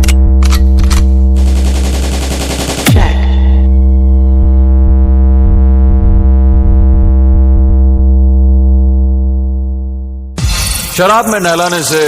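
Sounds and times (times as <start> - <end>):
deep buzzy synth bass note: 2.9 - 10.4.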